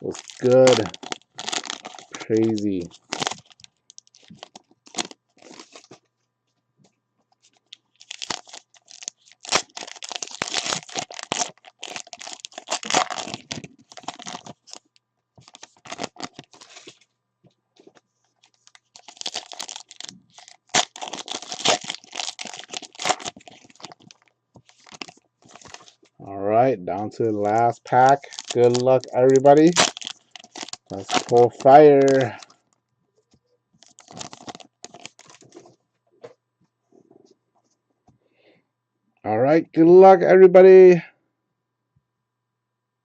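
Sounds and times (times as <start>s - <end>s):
foil wrapper tearing and crinkling: 0.0s - 6.0s, 7.5s - 17.0s, 17.9s - 26.0s, 27.4s - 32.6s, 33.8s - 35.7s.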